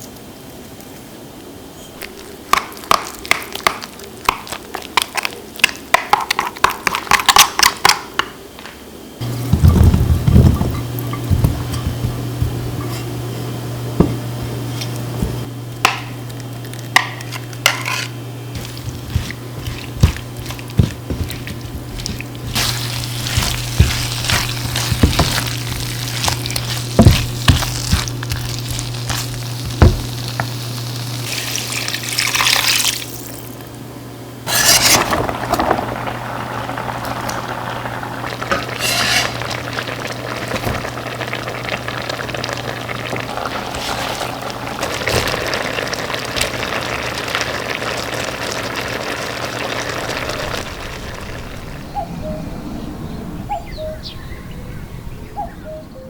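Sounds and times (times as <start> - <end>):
steady low hum: 8.8 - 31.9, 50.1 - 56.0
food sizzling: 9.2 - 33.7, 34.4 - 51.8
utensil stirring in a pan: 16.9 - 32.3, 34.5 - 35.4, 38.4 - 41.6.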